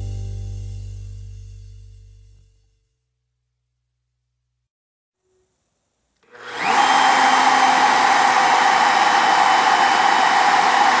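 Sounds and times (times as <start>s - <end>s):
router motor spinning: 6.2s - 11.0s.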